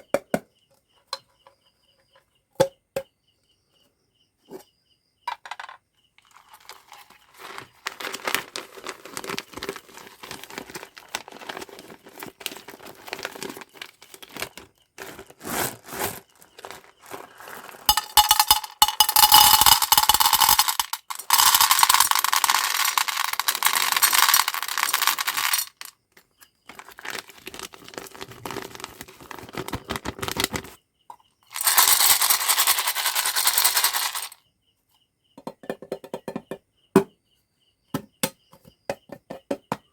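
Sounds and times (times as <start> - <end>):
plastic packaging crinkling and tearing: 6.4 - 17.9, 26.7 - 30.7.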